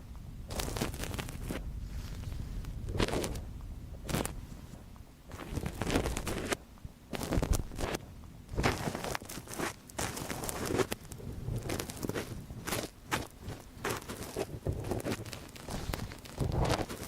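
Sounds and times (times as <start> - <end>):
tool scratching in ear: 8.6 - 17.0.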